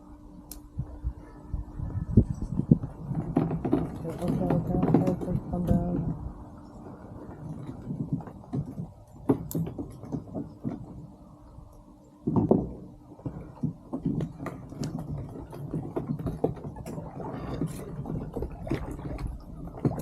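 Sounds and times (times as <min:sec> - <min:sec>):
knocks and taps on a kayak: 0:02.7 - 0:06.2, 0:07.3 - 0:11.2, 0:12.2 - 0:20.0.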